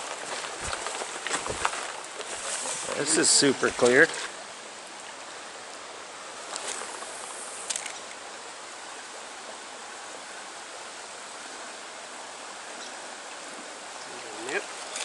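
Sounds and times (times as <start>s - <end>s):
stream water flowing: 0.0s - 15.0s.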